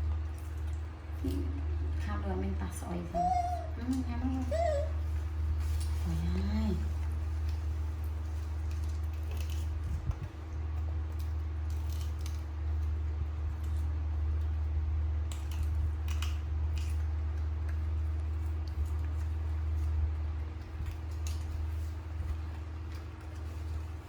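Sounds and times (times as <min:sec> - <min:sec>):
pets chewing fruit crunching: 0:00.0 - 0:24.0.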